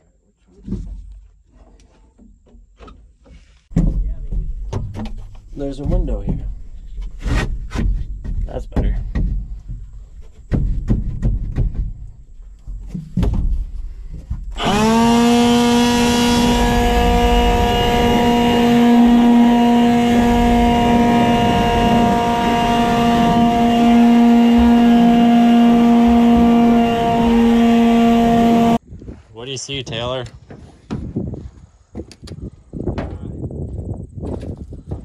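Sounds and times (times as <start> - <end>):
knocks and scrapes: 0.5 - 27.2, 30.2 - 33.4, 34.2 - 35.0
leaf blower high whine: 14.6 - 28.8.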